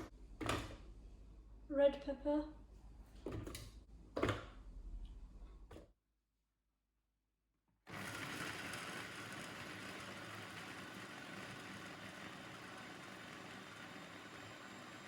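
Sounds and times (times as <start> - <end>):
food processor chopping: 7.9 - 15.0.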